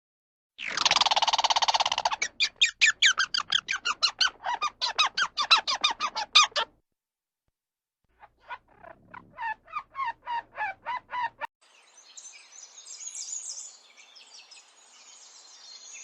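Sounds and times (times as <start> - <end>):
bird buzzing squawk: 8.2 - 11.5.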